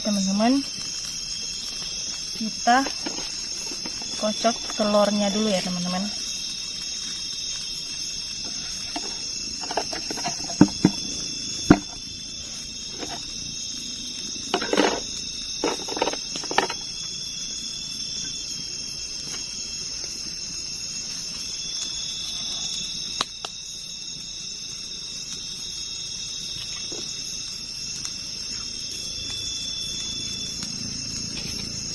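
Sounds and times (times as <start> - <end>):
night insects chorus: 0.0 - 31.9
cooking utensils clattering: 14.5 - 16.8.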